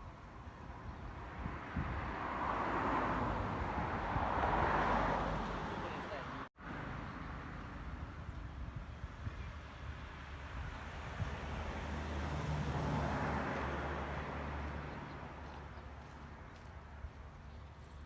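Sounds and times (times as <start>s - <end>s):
vehicle engine passing by: 11.2s - 16.3s.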